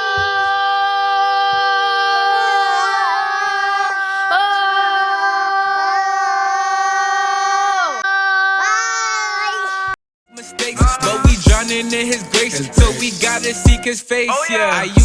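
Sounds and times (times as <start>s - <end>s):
child singing: 0.0s - 10.0s.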